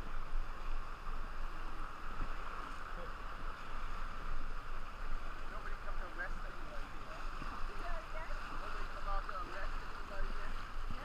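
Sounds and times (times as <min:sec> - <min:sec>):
river water rushing: 0:00.0 - 0:11.0.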